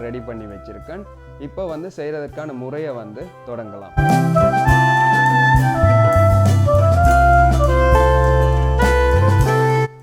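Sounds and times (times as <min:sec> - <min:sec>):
steady bass line: 0:00.0 - 0:01.8, 0:04.0 - 0:10.0
jazzy wind instrument melody: 0:00.0 - 0:02.5, 0:03.2 - 0:10.0.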